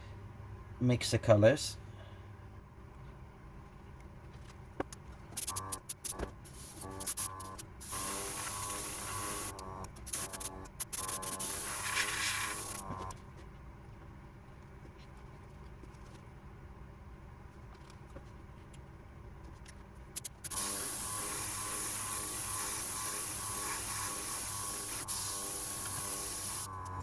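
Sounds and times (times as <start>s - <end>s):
airbrush spraying hiss: 5.4s - 12.8s, 20.2s - 26.7s
airbrush compressor humming: 5.4s - 13.2s, 20.1s - 27.0s.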